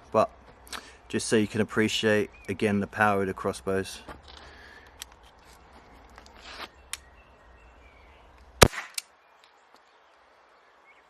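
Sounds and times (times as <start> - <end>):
brief rustle: 4.0 - 7.1
loud gunshot: 8.6 - 9.0.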